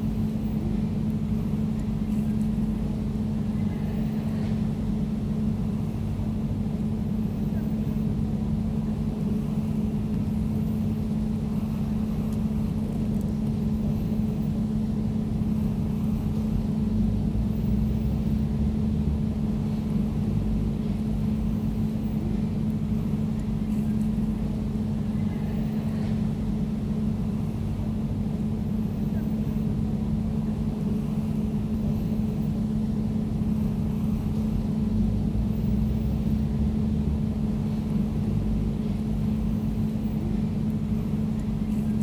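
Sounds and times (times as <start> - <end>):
air conditioner humming: 0.0 - 42.0.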